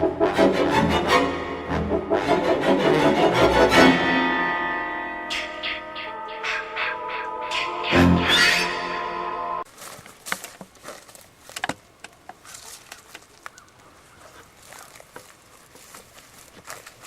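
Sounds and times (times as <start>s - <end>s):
music: 0.0s - 9.7s
light rustles and knocks: 9.7s - 17.0s.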